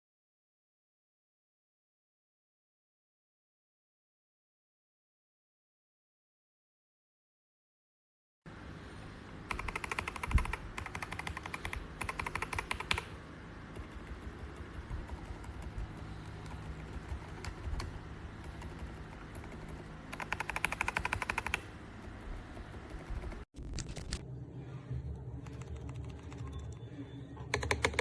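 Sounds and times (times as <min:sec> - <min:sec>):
mechanical keyboard typing: 0:09.5 - 0:13.1, 0:13.7 - 0:24.2, 0:25.4 - 0:26.8, 0:27.5 - 0:28.0.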